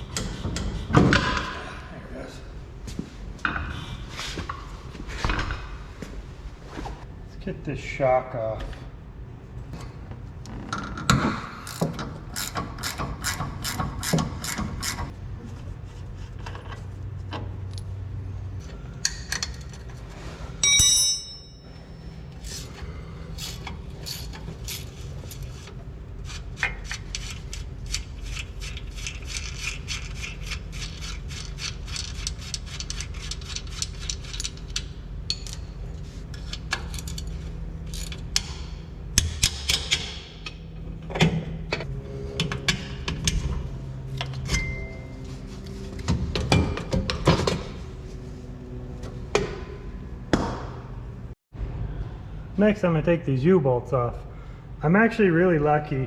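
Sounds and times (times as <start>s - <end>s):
ratchet wrench clicking: 11.6s - 15.1s.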